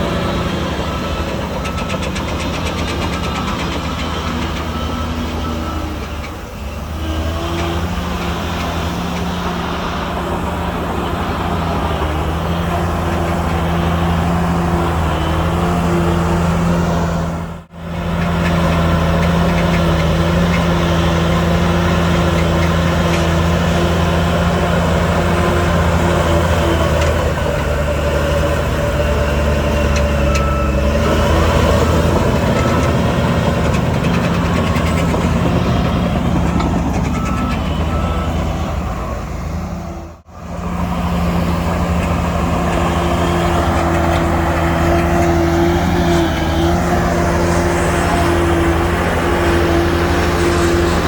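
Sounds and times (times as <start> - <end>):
reversing alarm beeping: 0.0 - 16.6, 23.4 - 40.1
diesel engines running: 0.0 - 51.0.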